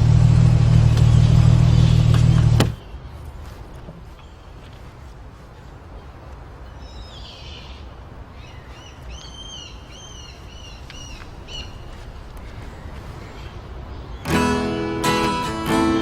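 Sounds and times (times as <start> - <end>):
low outdoor rumble: 0.0 - 16.0
small bird whistling calls: 8.4 - 12.6.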